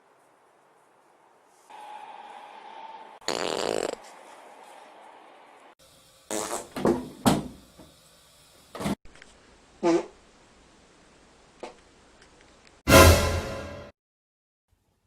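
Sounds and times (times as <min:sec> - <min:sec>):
buzzy fart sound: 0:03.2 - 0:04.0, 0:06.3 - 0:06.9, 0:09.8 - 0:10.2.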